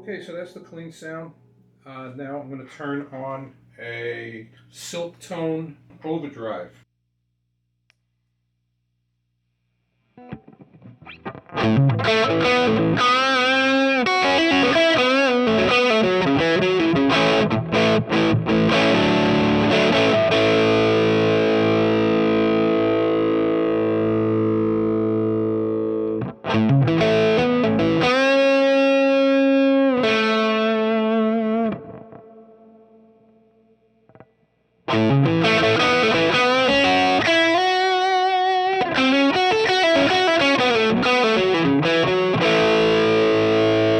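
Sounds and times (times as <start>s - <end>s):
distorted electric guitar: 10.2s - 34.3s, 34.9s - 43.9s.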